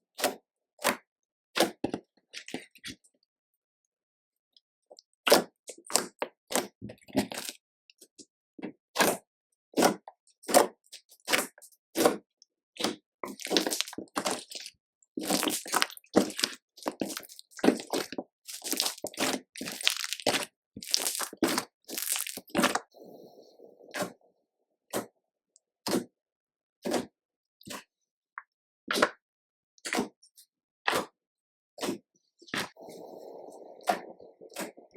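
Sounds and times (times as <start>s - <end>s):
slime popping and crackling: 13.4s - 22.8s.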